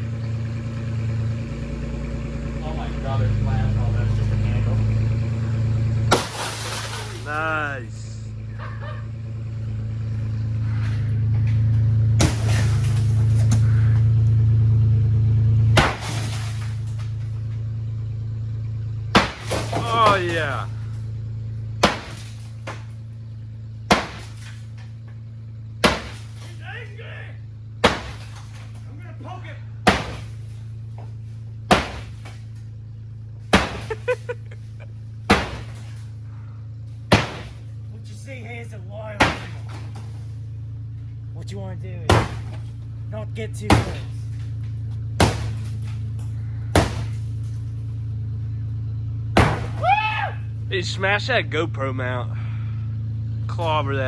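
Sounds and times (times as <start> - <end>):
sledgehammer hitting car body: 6.0 - 7.6, 10.6 - 14.4, 15.6 - 17.6, 19.1 - 21.1, 21.7 - 23.2, 23.8 - 25.0, 25.8 - 27.0, 27.8 - 32.8, 33.4 - 36.3, 36.9 - 40.6, 42.0 - 48.3, 49.0 - 50.7.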